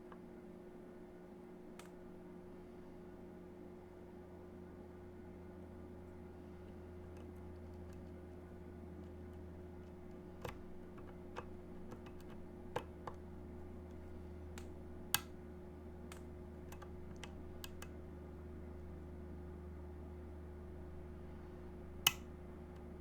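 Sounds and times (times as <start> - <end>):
steady low hum: 0.0 - 23.0
lock-picking tool clicks: 9.3 - 13.2, 16.0 - 18.0, 22.0 - 22.9.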